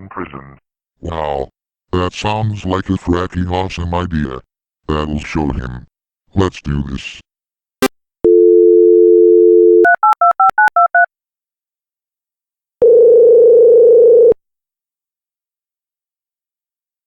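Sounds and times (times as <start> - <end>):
dial tone: 8.2 - 11.1, 12.8 - 14.4.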